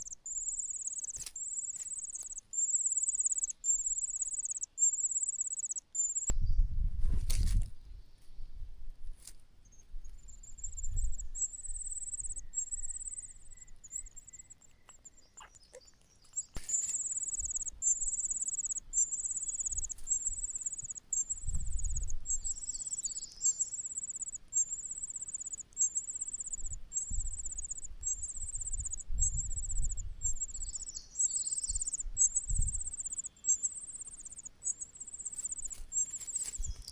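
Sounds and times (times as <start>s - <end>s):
cuckoo chick begging trill: 14.0s - 21.4s.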